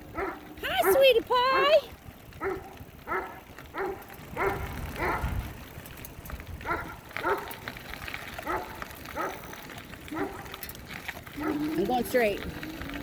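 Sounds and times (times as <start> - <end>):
dog barking: 0.1 - 0.5, 2.4 - 5.4, 6.6 - 7.5, 8.4 - 9.5, 10.1 - 10.6, 11.4 - 11.7.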